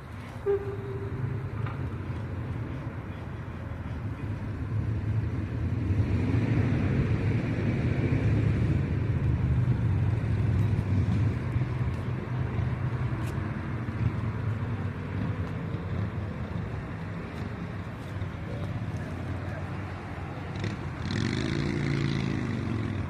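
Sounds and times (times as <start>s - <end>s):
steam train low rumble: 0.0s - 14.1s.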